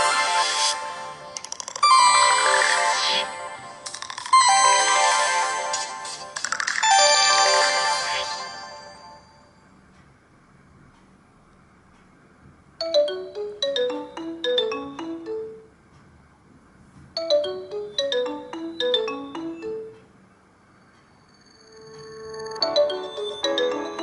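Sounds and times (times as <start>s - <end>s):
phone ringtone melody: 1.8s - 9.5s, 12.8s - 15.7s, 17.2s - 20.0s, 21.6s - 24.0s.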